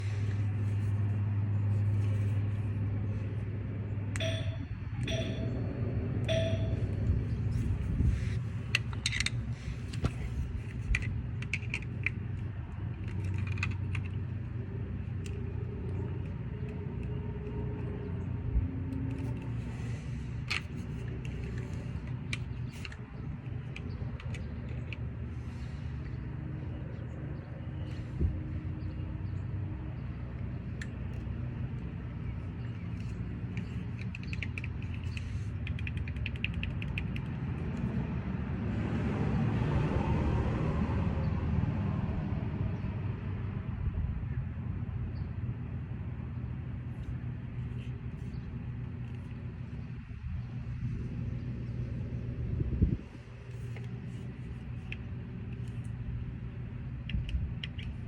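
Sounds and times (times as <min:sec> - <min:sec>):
low steady hum: 0:00.0 - 0:58.0
short electronic beeps: 0:04.2 - 0:05.6, 0:06.3 - 0:07.0
small hard parts clicking and rattling: 0:08.5 - 0:14.5, 0:19.0 - 0:26.2.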